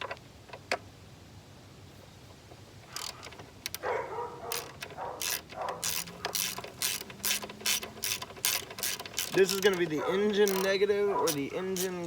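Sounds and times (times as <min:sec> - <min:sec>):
ratchet wrench clicking: 0:04.5 - 0:12.0.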